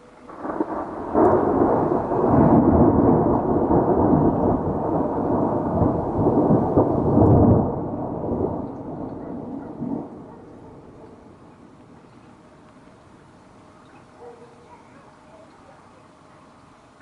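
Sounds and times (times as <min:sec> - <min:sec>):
thunder rumbling: 0:00.0 - 0:13.2.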